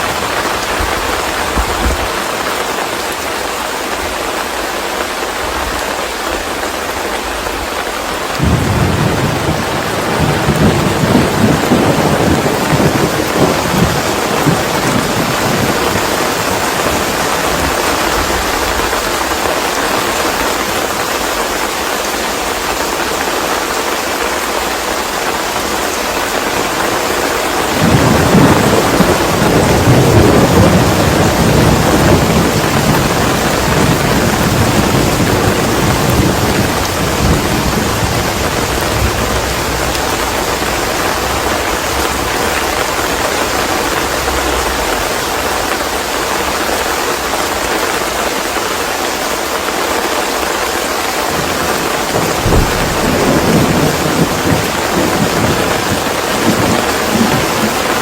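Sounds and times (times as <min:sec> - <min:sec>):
thunder rumbling: 0:00.0 - 0:02.8, 0:07.3 - 0:21.2, 0:27.6 - 0:48.6, 0:51.3 - 0:58.0
steady rain falling: 0:00.0 - 0:58.0.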